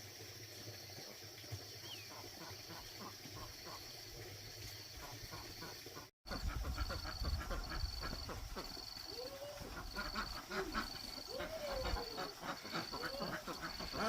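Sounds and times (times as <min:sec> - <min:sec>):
ducks calling: 0:05.3 - 0:14.0.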